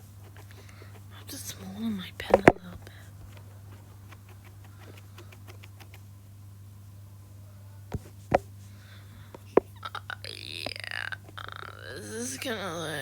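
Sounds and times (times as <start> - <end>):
sharp taps: 2.2 - 6.0
faint clicks: 2.2 - 6.1.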